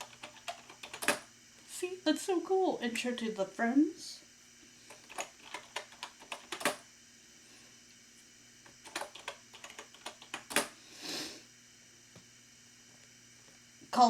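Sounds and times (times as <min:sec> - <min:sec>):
keyboard keystrokes clicking: 0:00.0 - 0:01.2, 0:05.0 - 0:06.8, 0:08.8 - 0:10.7.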